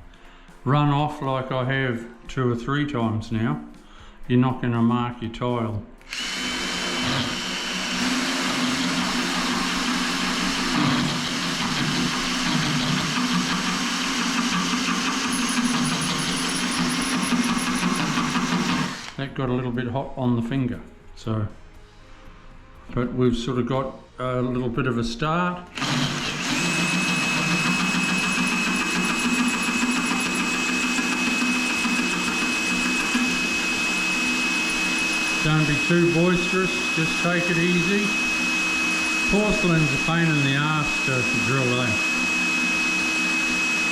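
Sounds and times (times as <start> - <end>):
power drill grinding into tile: 6.0 - 19.2, 25.8 - 43.9.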